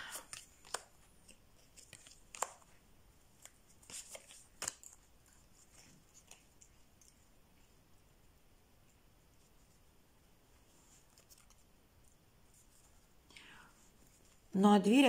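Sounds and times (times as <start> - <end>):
cards snapping and rustling: 0.0 - 6.7.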